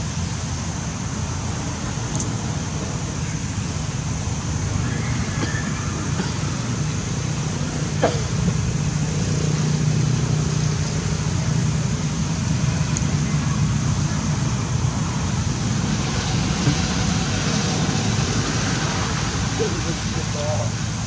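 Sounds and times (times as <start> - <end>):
low rumble and hiss: 0.0 - 21.0
sharp click: 2.1 - 2.3.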